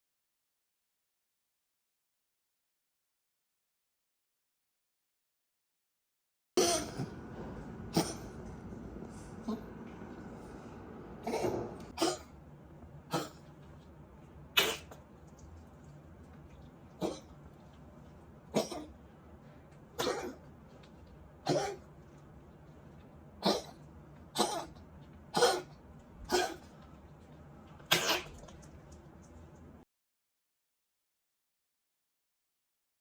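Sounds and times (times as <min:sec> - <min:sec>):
dog coughing: 0:06.6 - 0:10.5, 0:11.2 - 0:12.4, 0:13.1 - 0:13.5, 0:14.6 - 0:15.0, 0:17.0 - 0:17.4, 0:18.5 - 0:19.0, 0:20.0 - 0:20.5, 0:21.4 - 0:21.9, 0:23.4 - 0:26.8, 0:27.8 - 0:28.7.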